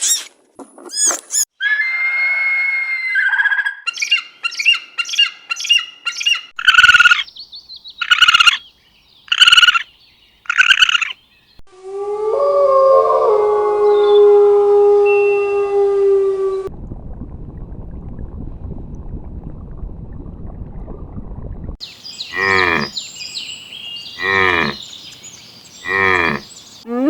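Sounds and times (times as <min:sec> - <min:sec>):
harsh animal squawks: 0:01.6 - 0:07.2, 0:08.0 - 0:08.6, 0:09.3 - 0:09.8, 0:10.5 - 0:11.2
bird-like chirps: 0:03.6 - 0:11.6, 0:21.8 - 0:27.0
long steady animal call: 0:22.2 - 0:25.0, 0:25.8 - 0:27.0.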